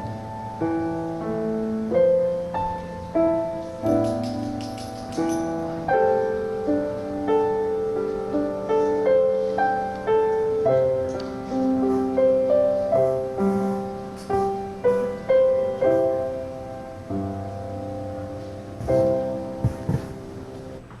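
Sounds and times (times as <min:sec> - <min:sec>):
solo piano melody with chords: 0:00.0 - 0:21.0.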